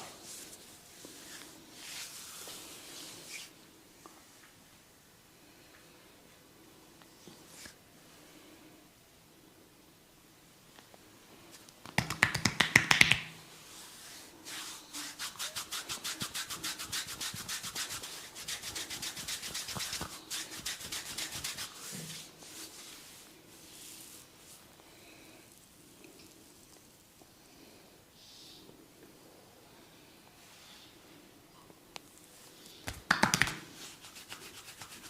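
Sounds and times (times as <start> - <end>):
hands slapping skin: 11.8 - 13.4, 19.1 - 21.7, 32.8 - 35.0
hands rubbing skin: 11.8 - 24.6, 32.8 - 35.0.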